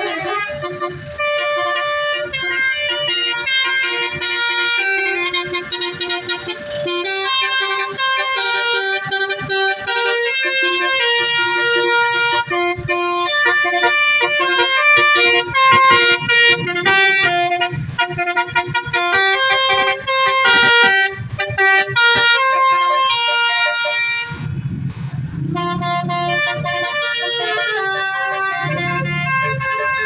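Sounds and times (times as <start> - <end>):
musical vehicle horn melody: 0.0 - 30.0
low rumble: 24.2 - 27.0.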